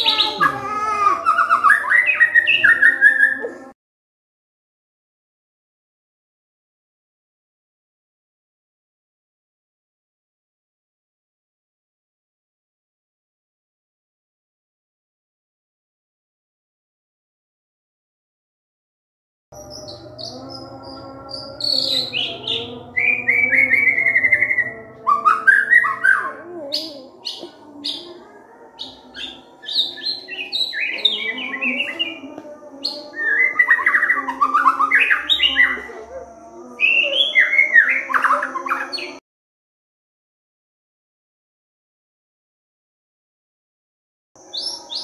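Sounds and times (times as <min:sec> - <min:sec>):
songbird singing whistled phrases: 0:36.8 - 0:39.2.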